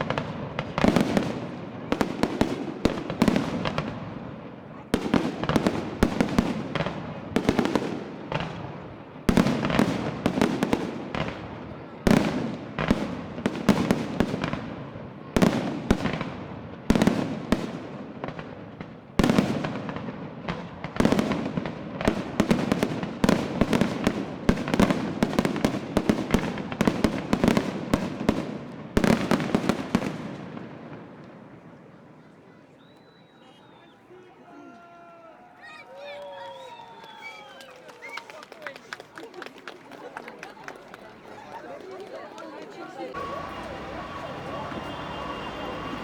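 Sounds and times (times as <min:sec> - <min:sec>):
fireworks shells bursting: 0:43.2 - 0:46.0.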